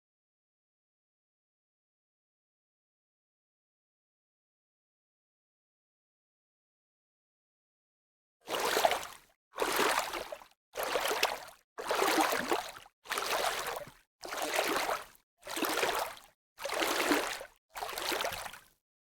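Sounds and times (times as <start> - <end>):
rushing splashing water: 8.5 - 9.0, 9.6 - 10.2, 10.8 - 15.0, 15.6 - 18.6.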